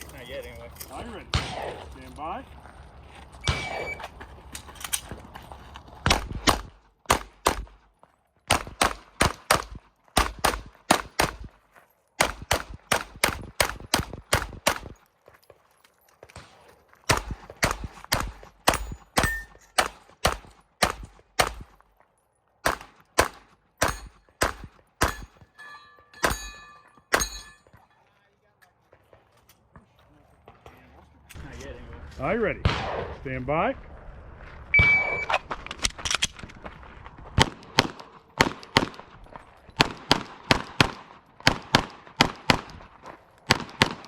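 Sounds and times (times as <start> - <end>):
pistol shots: 1.2 - 2.0, 3.4 - 4.0, 6.1 - 7.8, 8.5 - 11.5, 12.2 - 15.0, 16.4 - 21.8, 22.6 - 25.4, 32.6 - 33.2, 37.4 - 39.2, 39.8 - 44.0
steel targets ringing: 18.7 - 19.8, 23.8 - 24.3, 25.0 - 27.9.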